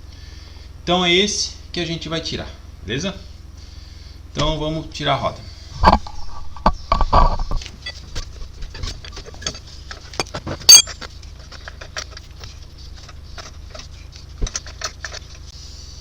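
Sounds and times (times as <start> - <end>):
metal tools clicking and rattling: 8.7 - 12.4
ringing metallic clink: 10.2 - 11.0.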